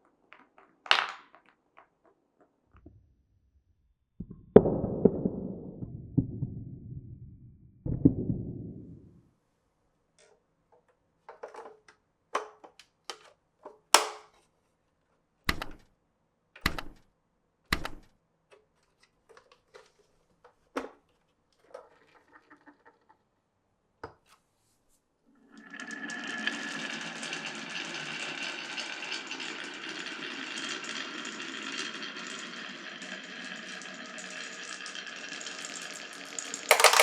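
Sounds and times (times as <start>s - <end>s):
marbles rolling on wooden run: 0.3s - 2.0s, 25.6s - 35.1s, 36.7s - 37.0s
marbles clicking and knocking: 36.7s - 37.0s.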